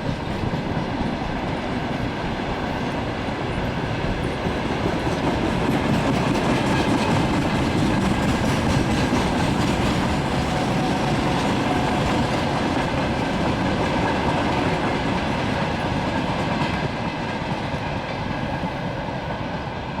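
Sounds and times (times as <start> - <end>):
train wheels clattering over rails: 0.0 - 20.0.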